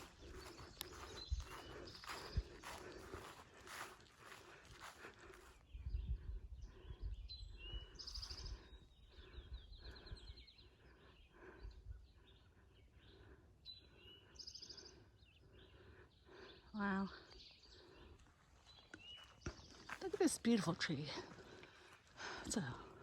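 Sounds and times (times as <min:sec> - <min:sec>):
footsteps on woodland trail: 0:00.0 - 0:05.8, 0:16.3 - 0:23.0
songbirds singing: 0:00.0 - 0:23.0
wind on microphone: 0:05.7 - 0:08.6.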